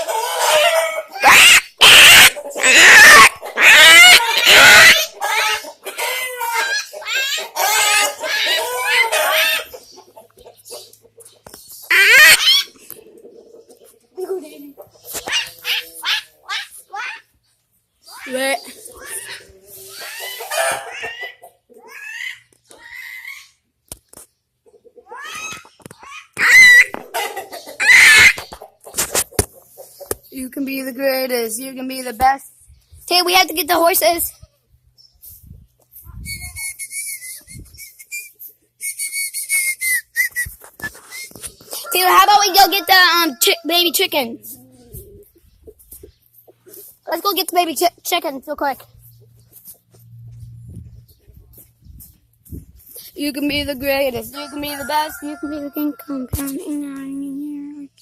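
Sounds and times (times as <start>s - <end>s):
chicken clucking: 0.0s - 30.3s, 40.4s - 47.3s
loud harsh animal squeals: 0.1s - 9.7s, 11.9s - 12.7s, 27.8s - 28.4s.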